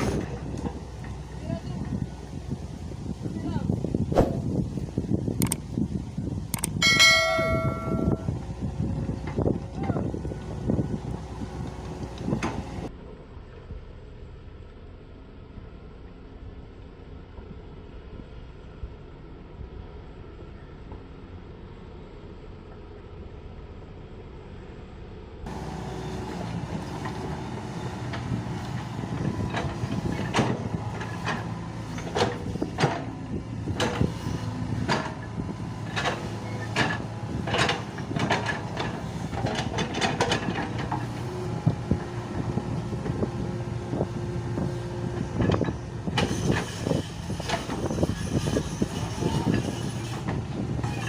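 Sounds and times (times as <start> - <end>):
excavator diesel engine: 0.0 - 51.0
metallic clanks and knocks: 6.6 - 8.3.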